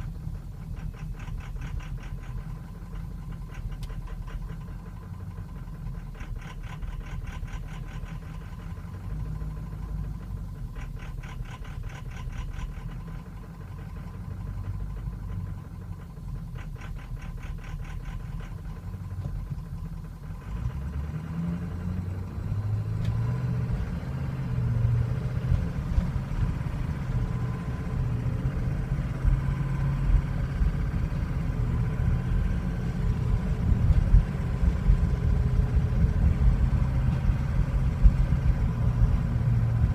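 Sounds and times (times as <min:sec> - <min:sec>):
rapid clicking: 0:00.0 - 0:04.8, 0:05.4 - 0:09.0, 0:10.0 - 0:13.2, 0:13.8 - 0:18.9
diesel engine running: 0:00.0 - 0:39.9.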